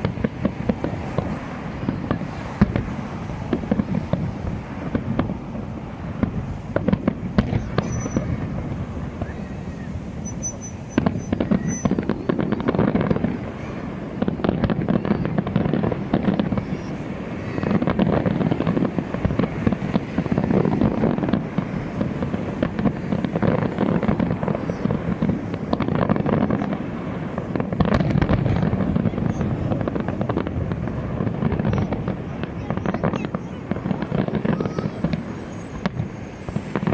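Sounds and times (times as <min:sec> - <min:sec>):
fireworks bangs and crackles: 0:00.0 - 0:36.9.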